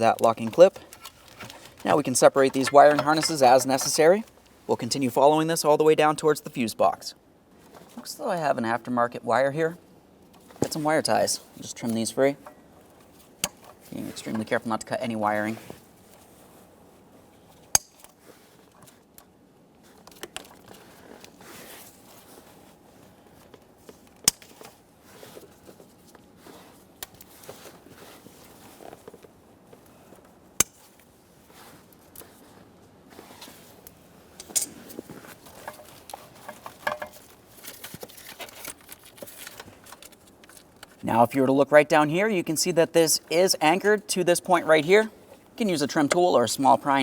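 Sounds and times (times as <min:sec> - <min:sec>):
wiring harness rustling: 0:00.0 - 0:05.0, 0:19.8 - 0:41.3.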